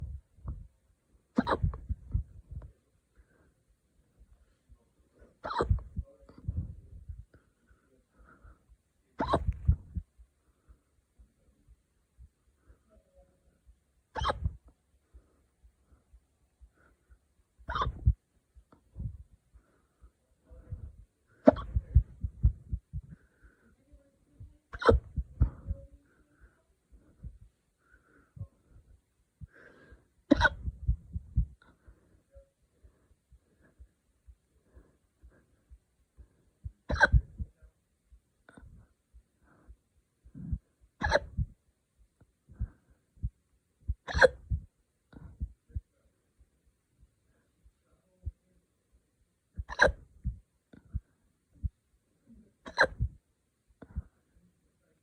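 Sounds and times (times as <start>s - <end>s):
person hiccuping: 1.4s - 1.9s, 5.4s - 6.0s, 9.2s - 9.8s, 14.2s - 14.6s, 17.7s - 18.1s, 21.5s - 22.1s, 24.7s - 25.2s, 30.3s - 30.7s, 36.9s - 37.4s, 41.0s - 41.4s, 44.1s - 44.5s, 49.6s - 50.1s, 52.6s - 53.2s.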